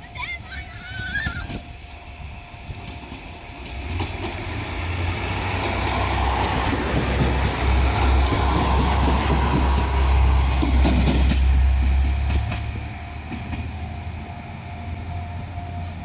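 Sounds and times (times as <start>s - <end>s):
train engine rumble: 0.0s - 16.0s
train wheels on rails: 0.0s - 16.0s.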